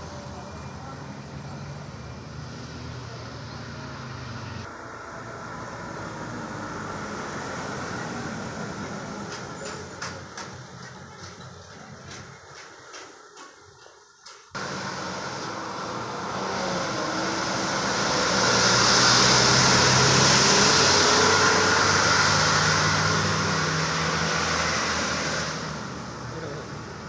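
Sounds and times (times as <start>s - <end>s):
truck engine: 0.0s - 27.0s
tyres hissing on wet road: 1.4s - 9.9s, 14.6s - 27.0s.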